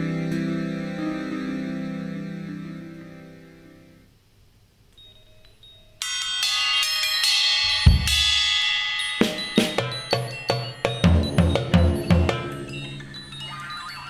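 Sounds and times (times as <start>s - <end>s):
ringing cymbal and drums: 6.0s - 13.7s
quick repeated drum strikes: 7.9s - 8.6s, 9.2s - 12.9s.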